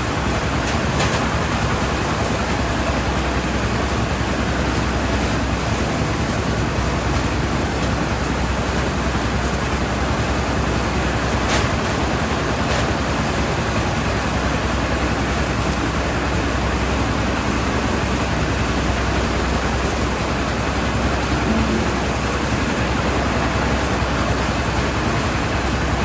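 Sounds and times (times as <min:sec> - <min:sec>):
loud rushing noise: 0:21.0 - 0:23.6.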